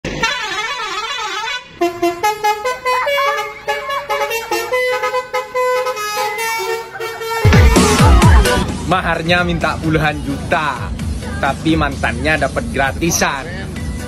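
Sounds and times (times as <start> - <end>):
multi-tone bus air horn: 0.1 - 8.7.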